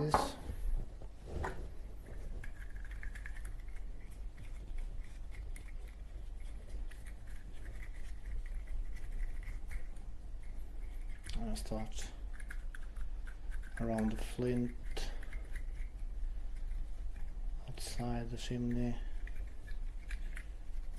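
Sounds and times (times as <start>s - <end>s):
cotton swab scratchy rubbing: 1.9s - 20.9s.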